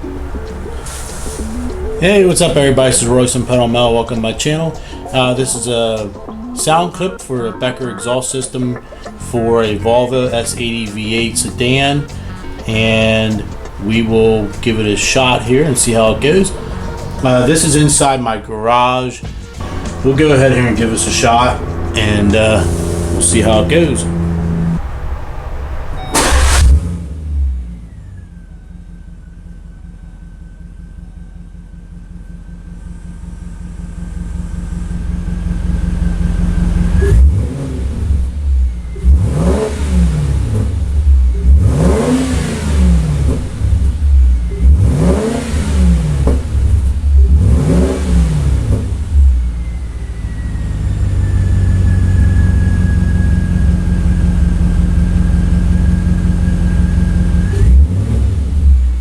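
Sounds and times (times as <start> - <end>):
car engine starting and idling: 0.0 - 59.0
engine revving: 8.4 - 18.4, 19.2 - 28.5, 32.0 - 59.0
thin high whine: 19.6 - 26.7.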